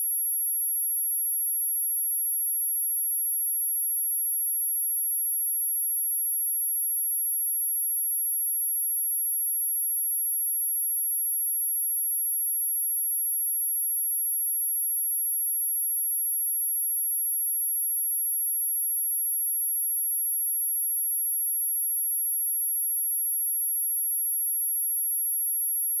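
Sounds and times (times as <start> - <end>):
high-pitched sine test tone: 0.0 - 2.9, 9.6 - 26.0.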